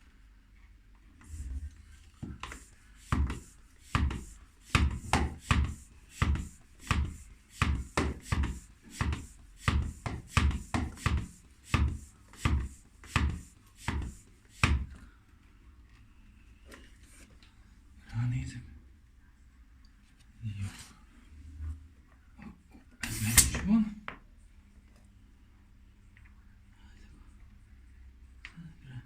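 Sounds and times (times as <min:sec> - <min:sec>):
bicycle hand pump strokes: 0:01.2 - 0:15.0.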